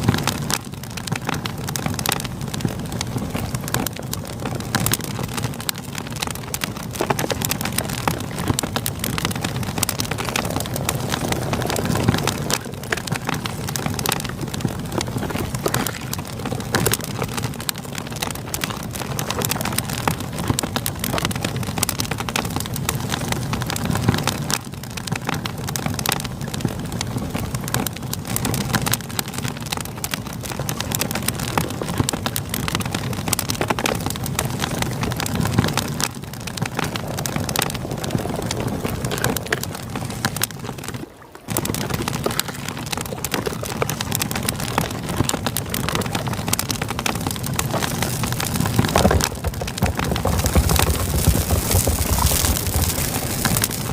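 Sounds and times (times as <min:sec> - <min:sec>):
campfire crackling: 0:00.0 - 0:53.9.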